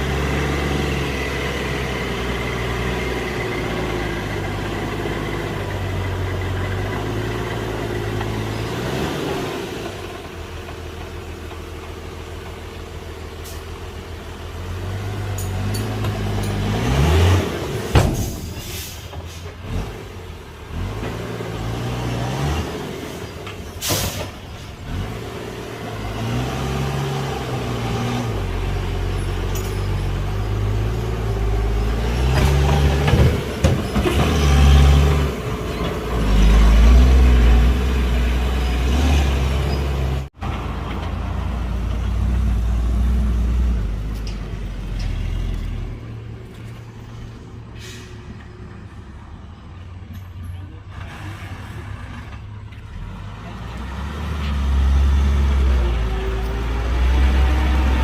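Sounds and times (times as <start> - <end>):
heavy diesel engines working: 0.0 - 58.0
air brakes hissing: 18.1 - 19.6, 23.6 - 24.8, 47.6 - 48.4.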